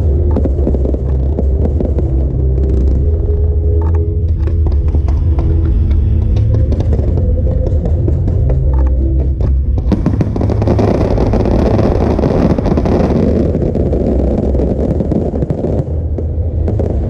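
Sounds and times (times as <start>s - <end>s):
fireworks crackling: 0.0s - 3.5s, 9.7s - 17.0s
fireworks low rumble: 0.0s - 17.0s.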